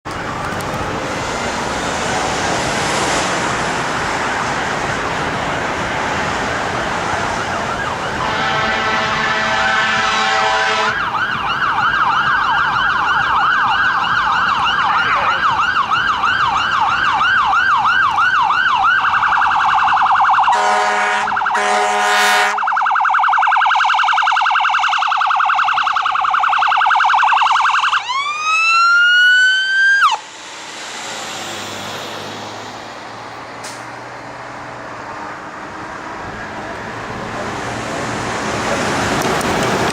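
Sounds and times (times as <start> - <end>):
traffic noise: 0.0 - 39.9
ambulance siren: 0.1 - 33.8
air horn blasts: 8.2 - 11.0, 20.5 - 22.6.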